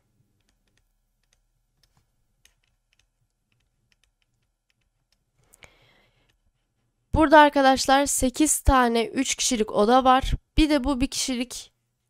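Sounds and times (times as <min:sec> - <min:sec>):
faint irregular clicks: 0:00.3 - 0:06.9.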